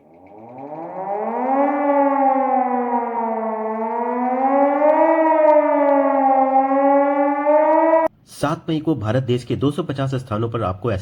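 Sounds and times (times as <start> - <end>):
air-raid siren wailing: 0.0 - 8.1.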